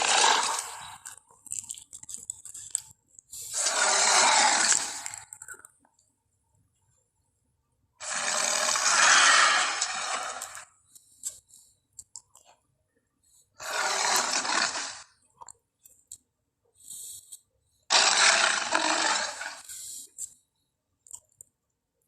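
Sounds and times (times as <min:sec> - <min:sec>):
small clicks and crunching: 0:00.0 - 0:03.4
harsh breathy monster growl: 0:03.5 - 0:05.2, 0:08.0 - 0:10.6.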